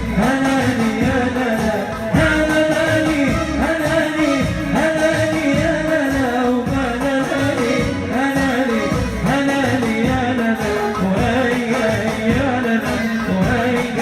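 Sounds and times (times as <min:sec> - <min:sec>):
steady low beat: 0:00.0 - 0:08.2
pop song with sliding melody: 0:00.0 - 0:14.0.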